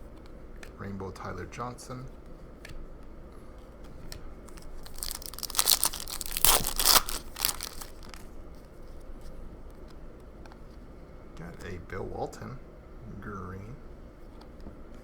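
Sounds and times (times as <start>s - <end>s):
foil wrapper crinkling and tearing: 4.5s - 8.4s.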